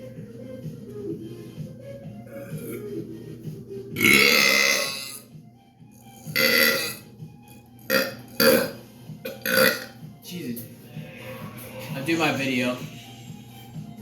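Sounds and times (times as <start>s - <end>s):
man burping: 4.0s - 5.2s, 6.4s - 7.0s, 7.9s - 9.9s.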